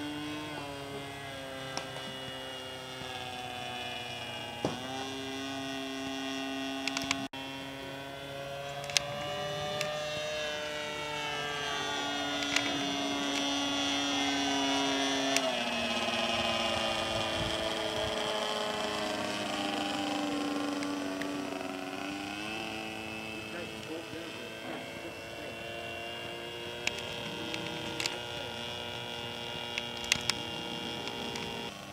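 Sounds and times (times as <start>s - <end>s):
model plane engine buzzing: 0.0s - 31.9s
sharp clicks: 6.8s - 7.3s, 8.7s - 9.1s, 12.4s - 13.5s, 26.8s - 28.6s, 29.3s - 31.7s.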